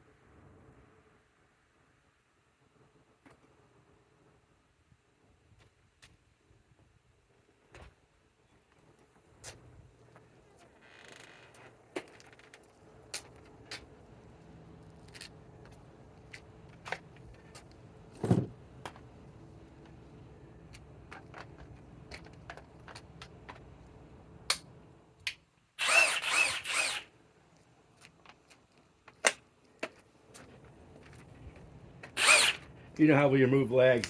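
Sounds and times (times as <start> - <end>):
cordless drill running: 25.8 - 27.1, 32.2 - 32.8.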